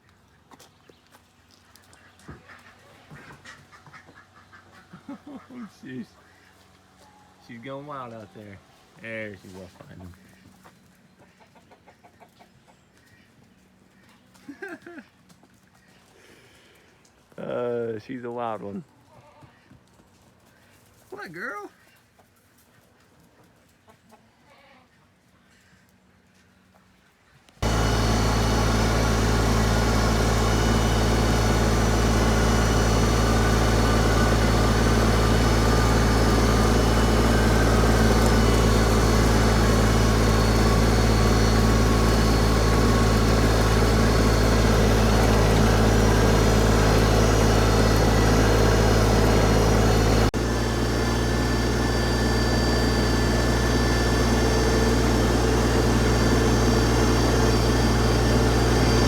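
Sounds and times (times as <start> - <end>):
tractor diesel engine running: 27.6 - 59.0.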